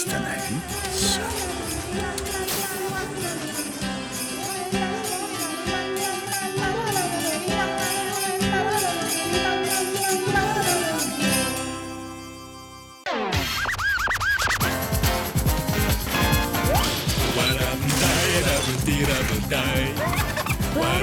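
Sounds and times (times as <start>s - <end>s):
cartoon soundtrack music: 0.0s - 3.7s, 15.7s - 21.0s.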